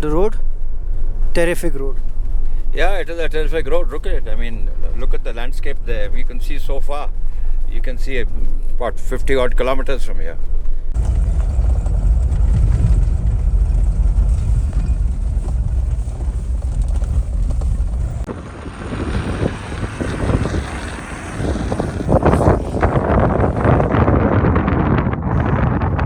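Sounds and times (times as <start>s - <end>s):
wind buffeting microphone: 10.9s - 26.0s.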